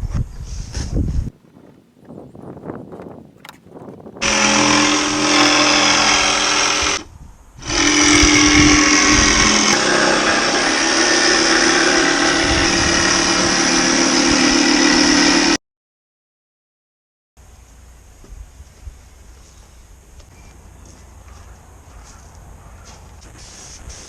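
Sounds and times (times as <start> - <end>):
electric power tool running: 4.2 - 15.6.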